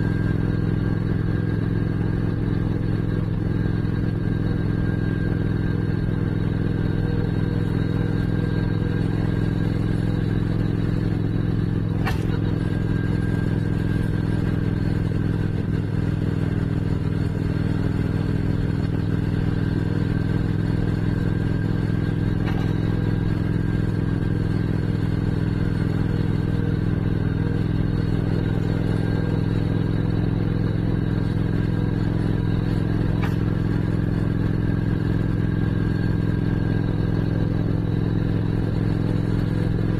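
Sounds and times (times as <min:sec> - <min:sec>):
motorcycle engine cruising: 0:00.0 - 0:39.9.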